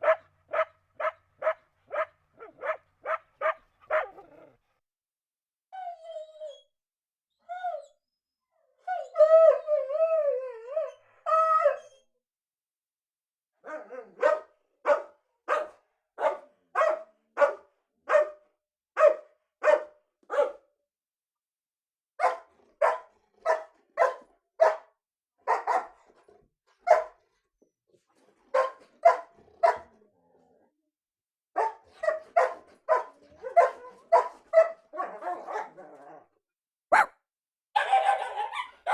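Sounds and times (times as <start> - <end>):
dog barking sharply: 0.0 - 4.2, 19.0 - 20.6, 22.2 - 24.9, 25.5 - 25.9, 31.6 - 34.8, 36.9 - 37.2
dog whining: 36.9 - 37.1.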